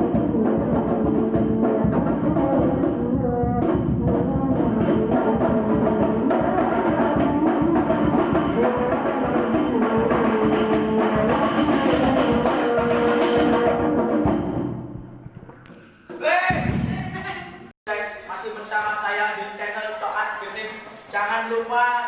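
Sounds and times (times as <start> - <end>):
frame drums beating: 0.0 - 17.4.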